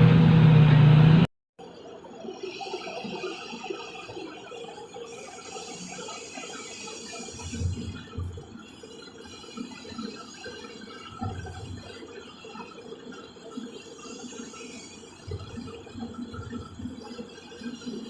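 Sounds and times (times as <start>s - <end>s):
excavator machinery running: 0.0s - 1.3s.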